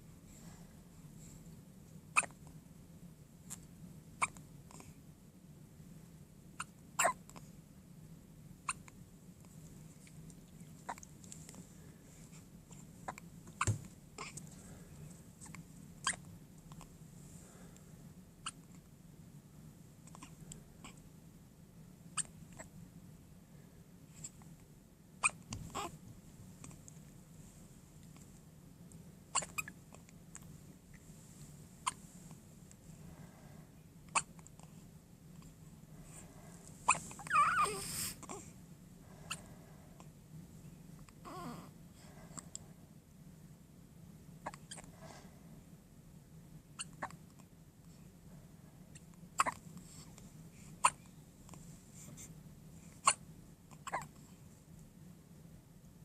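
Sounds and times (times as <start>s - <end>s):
faint low room hum: 0.0s - 56.0s
baby hiccuping: 2.2s - 2.4s, 6.6s - 7.2s, 29.3s - 29.7s, 34.1s - 34.4s, 49.4s - 49.6s
baby hiccupping: 2.2s - 2.4s, 6.6s - 7.2s, 29.3s - 29.7s, 36.9s - 38.4s, 49.4s - 49.6s
baby whimpering: 25.2s - 26.0s, 36.9s - 38.5s, 41.2s - 41.7s.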